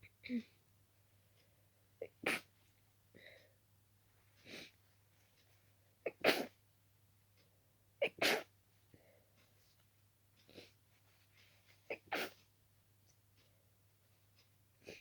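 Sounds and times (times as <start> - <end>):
person sneezing: 2.0 - 2.5, 6.1 - 6.5, 8.0 - 8.5, 11.9 - 12.4
soft breaths: 2.4 - 6.0, 8.7 - 15.0.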